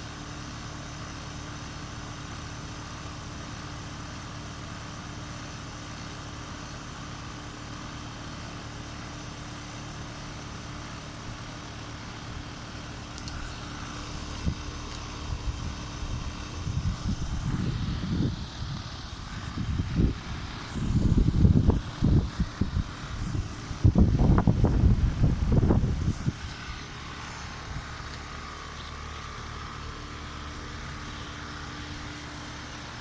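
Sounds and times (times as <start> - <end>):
air conditioner humming: 9.6 - 33.0.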